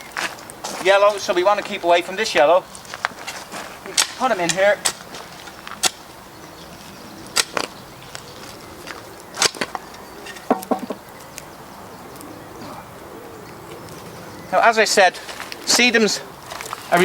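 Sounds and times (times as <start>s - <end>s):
clicks and scrapes in gravel: 15.2s - 17.0s.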